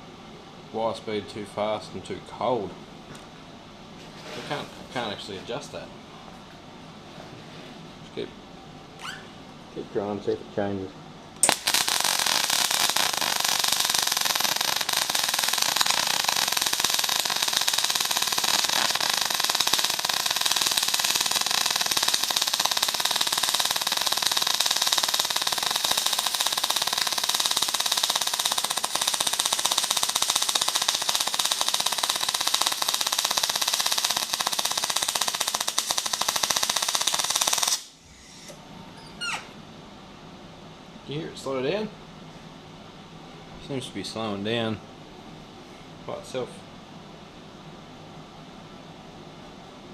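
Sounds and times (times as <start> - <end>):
welding arc crackling on steel: 11.4 - 38.0.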